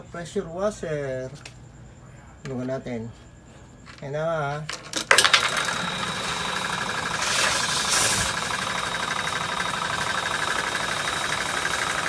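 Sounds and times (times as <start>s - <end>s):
pressure washer running: 5.0s - 12.0s
burst of hiss: 6.3s - 11.7s.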